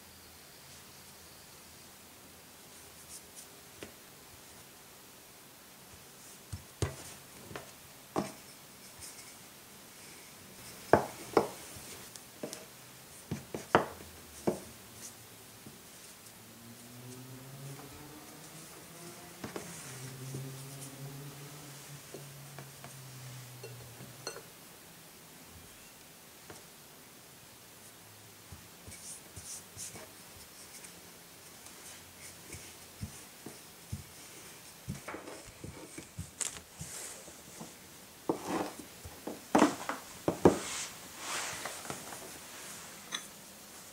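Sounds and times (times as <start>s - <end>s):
soft rubbing: 6.2s - 13.6s, 28.8s - 43.9s.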